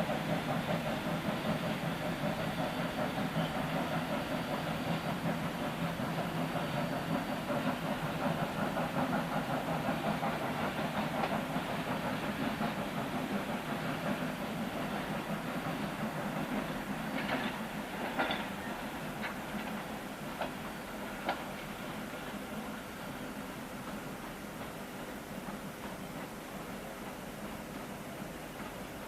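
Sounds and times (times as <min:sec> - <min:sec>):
wheels clattering on track: 0:00.0 - 0:22.8
steam train rumbling: 0:00.0 - 0:29.0.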